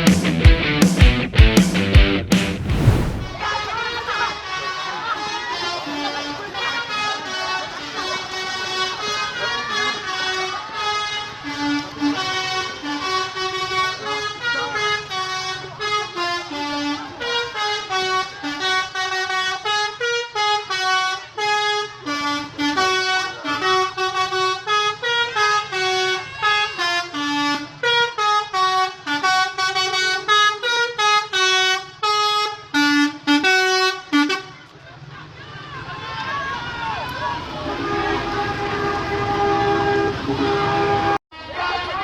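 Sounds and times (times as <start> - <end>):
bus musical horn tune: 10.0 - 34.5, 37.7 - 41.2.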